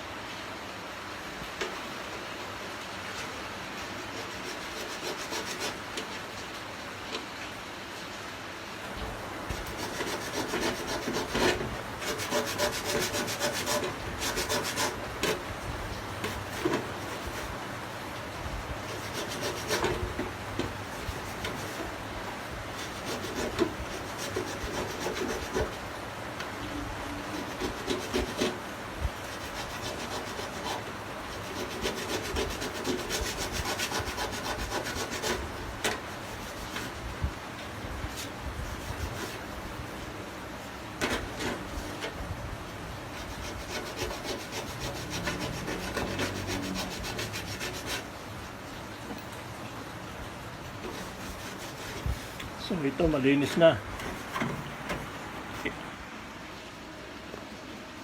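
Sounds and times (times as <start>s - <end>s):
hand scraping metal: 4.0s - 6.3s, 9.5s - 15.5s, 16.2s - 17.6s, 18.9s - 22.0s, 22.7s - 25.8s, 27.3s - 28.6s, 29.2s - 37.0s, 38.1s - 39.5s, 41.0s - 42.2s, 43.1s - 48.1s, 50.8s - 55.8s.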